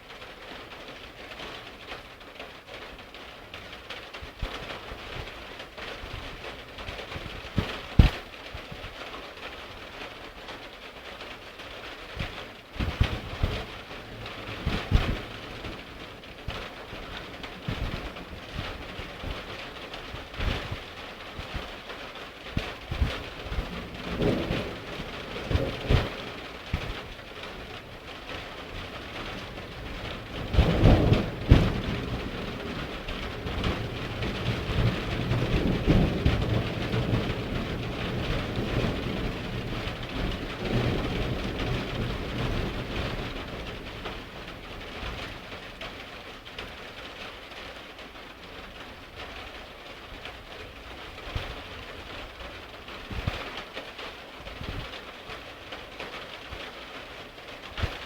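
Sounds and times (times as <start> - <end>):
heavy rain falling: 0.0 - 58.0
low rumble of thunder: 12.1 - 46.8
sharp thunderclap: 22.6 - 44.1.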